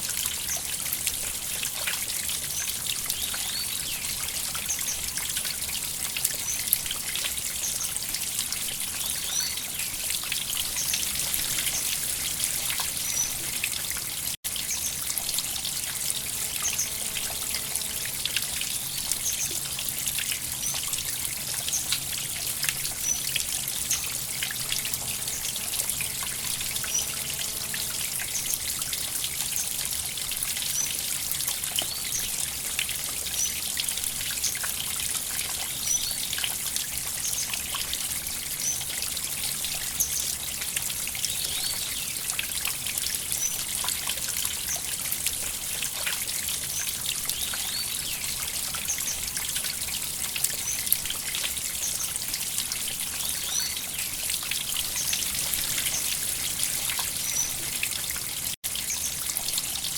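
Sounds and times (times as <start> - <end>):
river water trickling over stones: 0.0 - 59.9.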